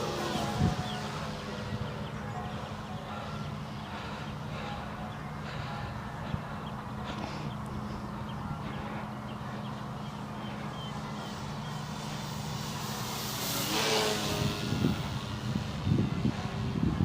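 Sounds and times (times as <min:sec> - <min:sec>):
model plane motor whine: 0:00.0 - 0:03.8, 0:07.8 - 0:17.0.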